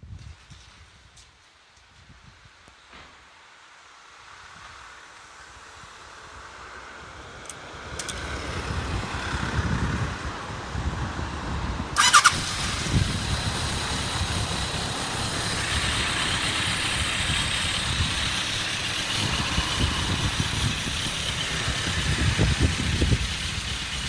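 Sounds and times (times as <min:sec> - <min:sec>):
motorcycle engine idling: 0:12.0 - 0:24.0.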